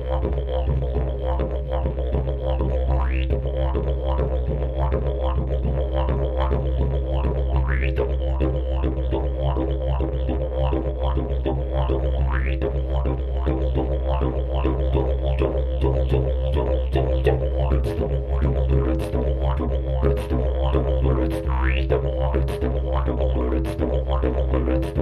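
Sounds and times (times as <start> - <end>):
didgeridoo drone: 0.0 - 25.0.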